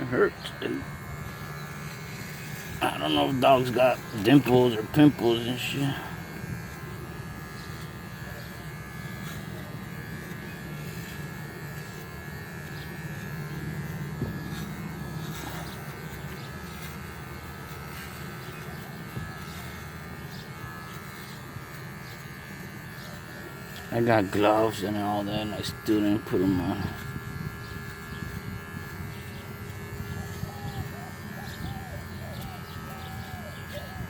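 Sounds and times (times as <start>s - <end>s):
electric hair clippers buzzing: 0.0s - 34.0s.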